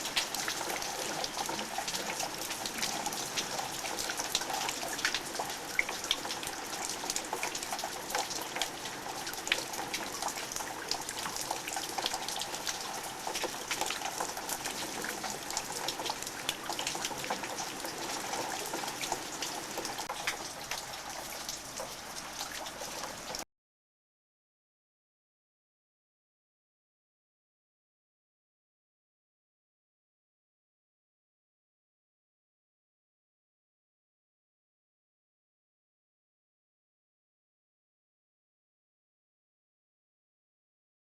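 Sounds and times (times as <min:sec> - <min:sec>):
steady rainfall: 0:00.0 - 0:23.4
water trickling and dripping: 0:00.0 - 0:23.4.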